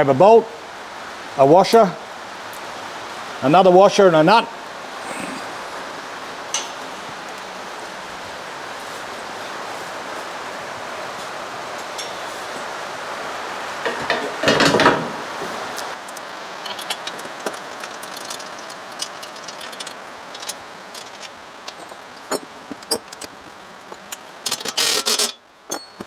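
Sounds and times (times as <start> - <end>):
light metallic clicks: 6.5 - 7.4
metal hardware clinking and rattling: 6.5 - 7.4, 11.2 - 13.0, 13.7 - 26.0.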